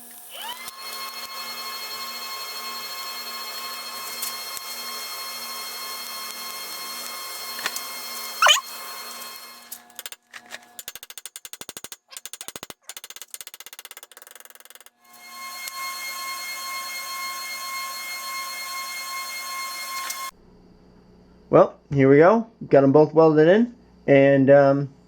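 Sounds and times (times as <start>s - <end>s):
welding arc whining and hissing: 0.0s - 10.8s, 15.0s - 20.4s
welding arc crackle: 0.0s - 11.0s.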